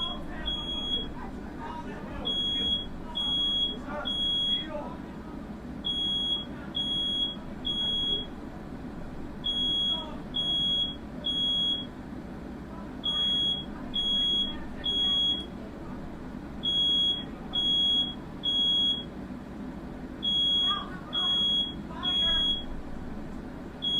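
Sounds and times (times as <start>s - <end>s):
smoke alarm short high beeps: 0.0s - 1.1s, 2.3s - 4.7s, 5.9s - 8.3s, 9.4s - 11.9s, 13.1s - 15.5s, 16.6s - 19.1s, 20.2s - 22.7s.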